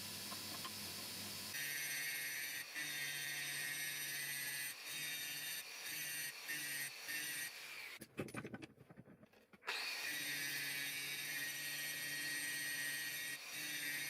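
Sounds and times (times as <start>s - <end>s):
clicks and knocks: 8.0s - 9.6s.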